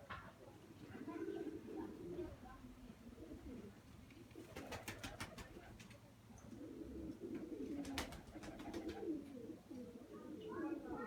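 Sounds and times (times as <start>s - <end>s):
pigeons cooing: 0.9s - 2.4s, 6.4s - 11.0s.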